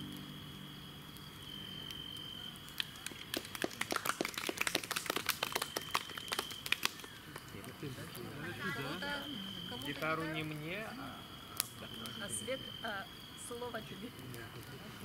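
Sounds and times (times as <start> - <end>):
cricket trilling: 0.0 - 15.0
sharp irregular cracks and clicks: 2.6 - 7.6, 11.6 - 11.8.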